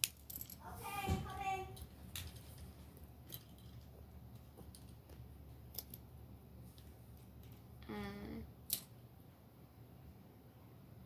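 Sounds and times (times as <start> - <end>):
small toys clicking and tapping: 0.0 - 0.6, 3.2 - 6.1
low steady hum: 0.0 - 11.0.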